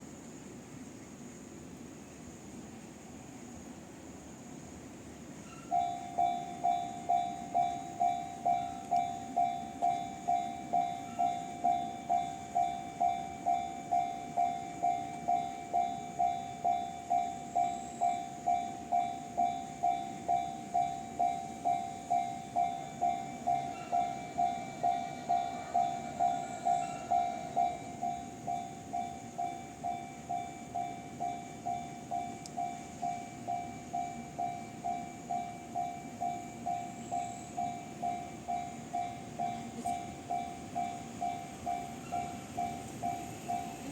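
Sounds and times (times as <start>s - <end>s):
level-crossing alarm clanging: 5.4s - 43.9s.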